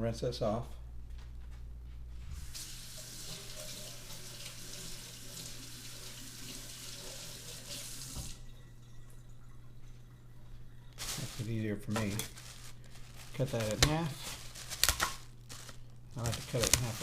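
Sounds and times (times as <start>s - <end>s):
faucet running into sink: 2.5s - 10.0s.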